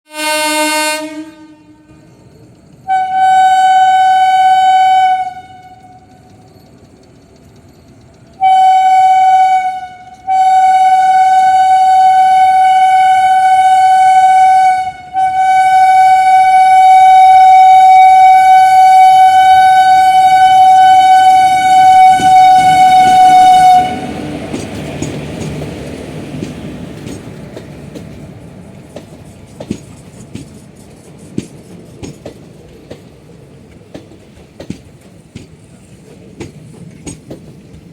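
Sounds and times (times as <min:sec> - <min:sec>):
shrill locomotive horn blasts: 0:00.1 - 0:06.2, 0:08.4 - 0:24.4
train running noise: 0:00.1 - 0:37.9.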